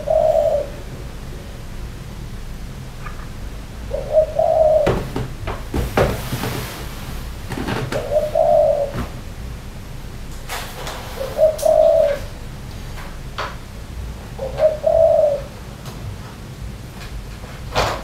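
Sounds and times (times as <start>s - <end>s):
dove cooing: 0.0s - 0.9s, 3.8s - 5.2s, 7.8s - 9.2s, 11.0s - 12.4s, 14.3s - 15.6s.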